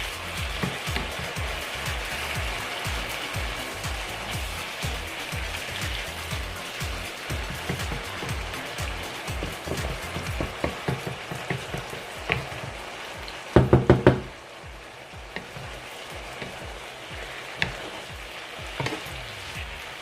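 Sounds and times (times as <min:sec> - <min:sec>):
chicken sizzling in a pan: 0:00.0 - 0:20.0
utensil scraping and tapping: 0:09.4 - 0:12.7, 0:17.6 - 0:18.1, 0:18.8 - 0:19.2.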